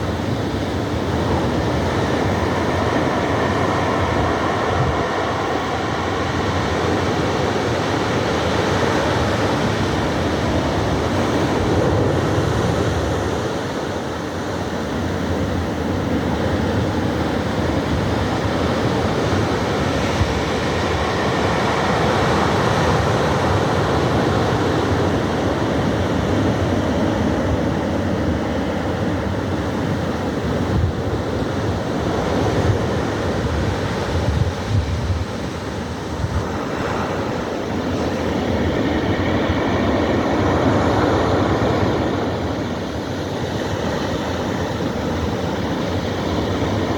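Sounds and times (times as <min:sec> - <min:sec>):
ocean surf washing onto shore: 0:00.0 - 0:46.9.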